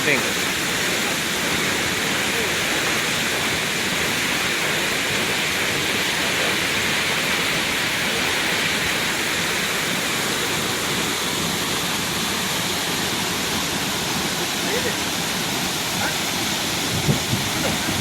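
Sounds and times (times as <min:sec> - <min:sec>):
waterfall pouring and splashing: 0:00.0 - 0:18.0.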